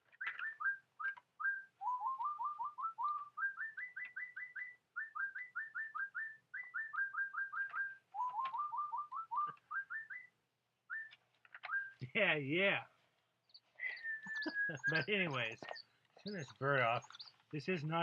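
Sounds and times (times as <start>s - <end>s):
bird singing whistled notes: 0.0s - 12.1s, 13.4s - 18.0s.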